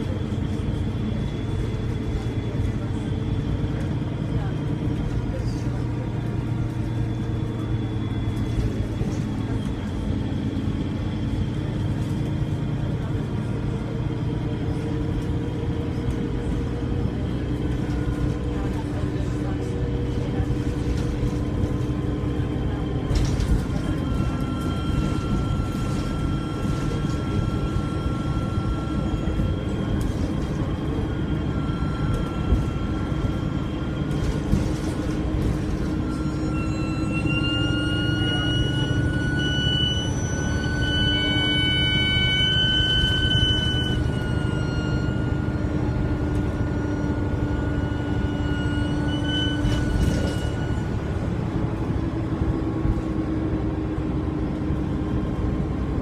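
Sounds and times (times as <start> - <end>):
bus diesel engine rumble: 0.0 - 56.0
high turbo whistle: 35.8 - 51.6.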